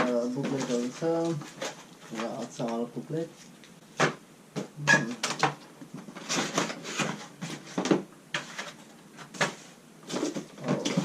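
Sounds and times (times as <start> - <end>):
packaging rustling: 0.0 - 2.9.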